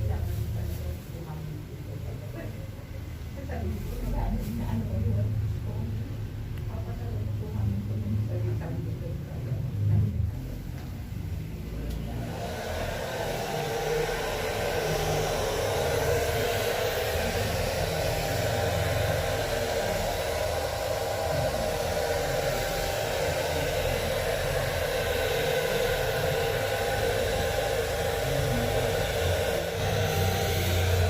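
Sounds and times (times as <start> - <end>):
small electric motor whirring: 25.6 - 31.0.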